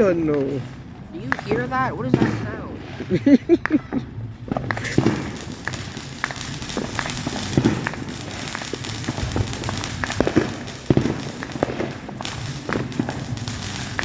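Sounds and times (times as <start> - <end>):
fireworks crackling and popping: 0.0 - 14.0.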